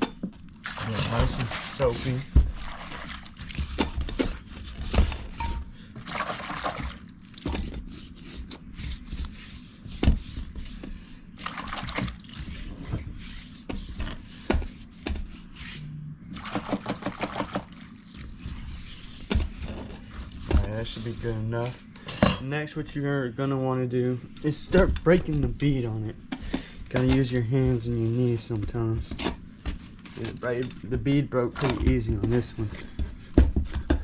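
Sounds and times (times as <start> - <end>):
wet scrubbing and splashing: 0.6 - 10.8, 11.4 - 15.8, 16.4 - 21.9.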